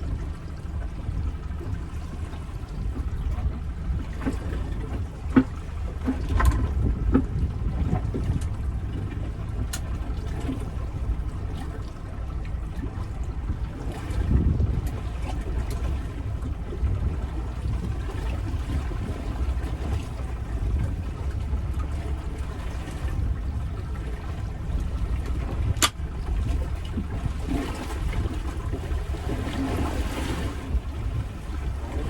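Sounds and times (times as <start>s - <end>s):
steady low rumble: 0.0s - 32.0s
water sloshing and trickling: 0.0s - 32.0s
sharp click: 25.8s - 26.0s.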